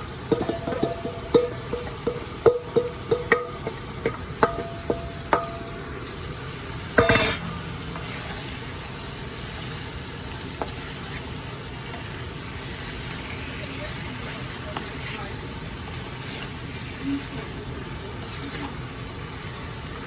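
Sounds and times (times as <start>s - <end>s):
loud sizzle burst: 0.0s - 20.0s
steady sizzling: 0.0s - 20.0s
utensil knocking against pot: 0.3s - 5.9s, 7.0s - 8.5s.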